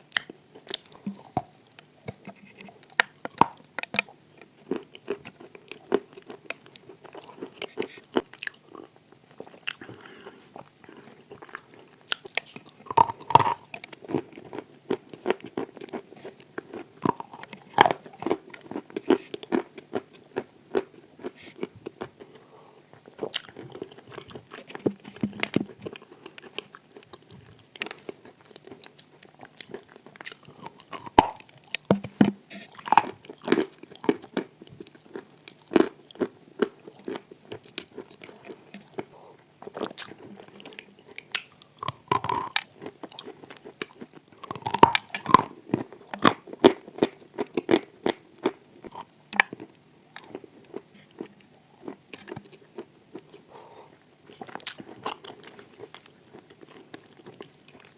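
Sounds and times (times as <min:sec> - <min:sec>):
chewing with crunching crackles: 0:00.0 - 0:57.9.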